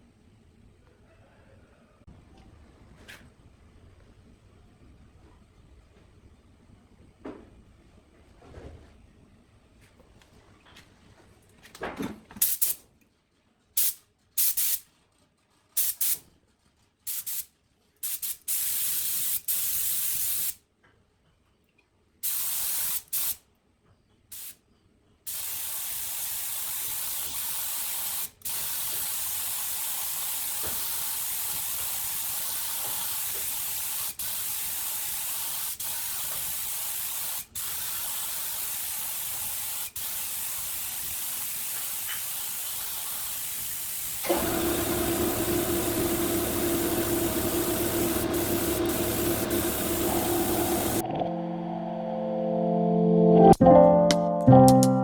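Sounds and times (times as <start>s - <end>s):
spray hissing: 33.0s - 51.0s.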